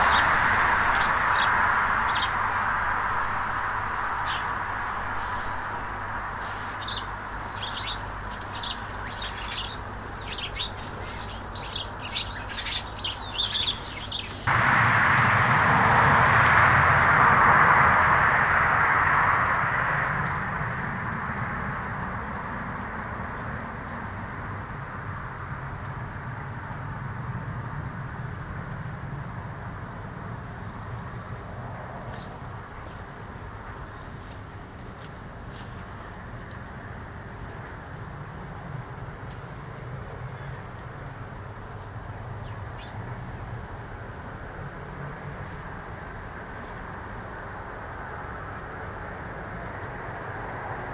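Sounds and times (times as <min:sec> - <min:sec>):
rushing noise: 0:00.0 - 0:06.6, 0:14.5 - 0:23.4
small birds chirping: 0:05.2 - 0:14.8.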